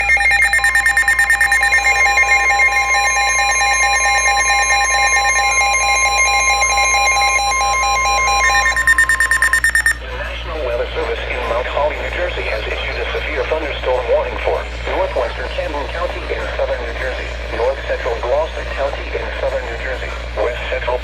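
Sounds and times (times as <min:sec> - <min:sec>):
fast pulsing high beeps: 0:00.0 - 0:10.0
steady warning alarm tone: 0:00.0 - 0:10.0.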